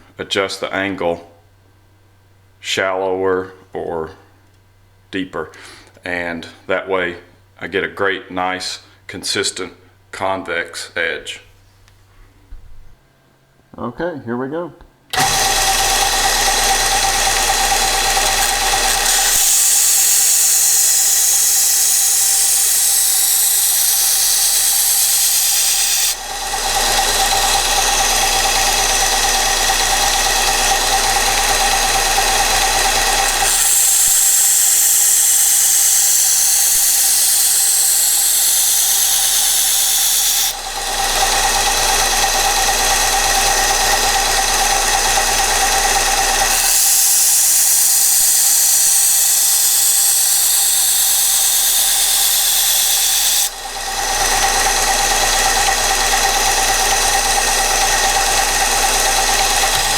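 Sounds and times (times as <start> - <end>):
belt sander motor whine: 15.1 - 59.9
knife grinding on sander: 15.2 - 59.9.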